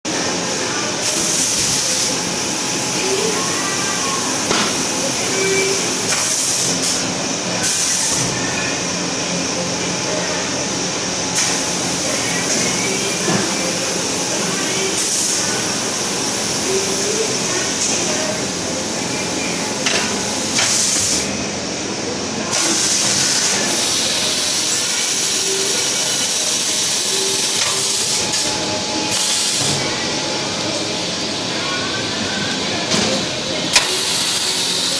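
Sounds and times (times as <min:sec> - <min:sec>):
packaging machine humming: 0:22.5 - 0:31.4, 0:33.5 - 0:34.9.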